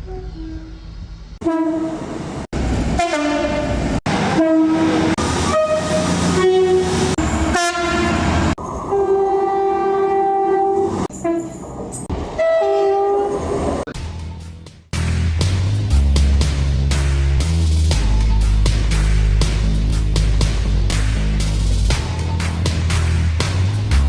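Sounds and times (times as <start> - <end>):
train horns: 1.4 - 2.0, 3.0 - 11.6, 12.4 - 13.4.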